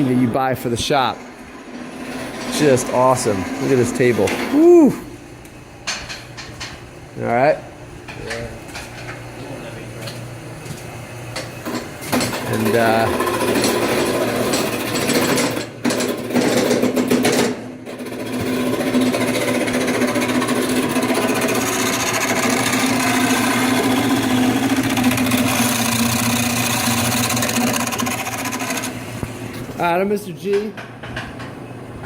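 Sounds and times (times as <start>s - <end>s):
woodworking machine rattling: 1.7s - 4.6s, 11.6s - 29.5s.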